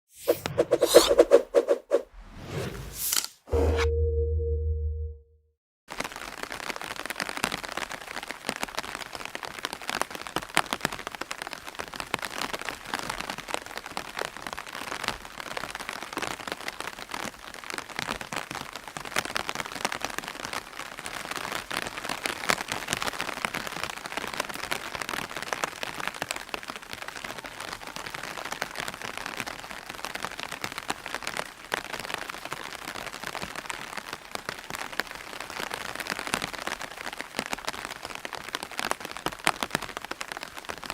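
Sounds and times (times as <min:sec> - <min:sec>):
rain pattering on an umbrella: 0:05.9 - 0:40.9.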